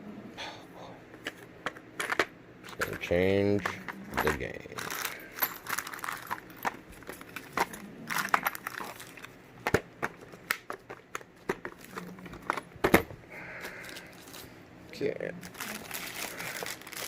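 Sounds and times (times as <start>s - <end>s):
packing material crinkling: 4.2s - 9.4s, 13.5s - 14.6s, 15.4s - 17.0s.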